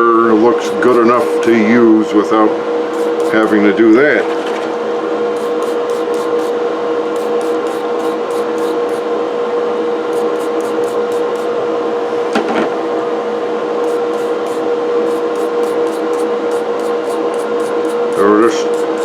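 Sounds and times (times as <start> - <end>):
steady mechanical hum: 0.0 - 19.0
wire brush scrubbing metal: 0.6 - 1.4, 2.9 - 3.7, 5.3 - 9.1, 10.1 - 11.5, 13.8 - 19.0.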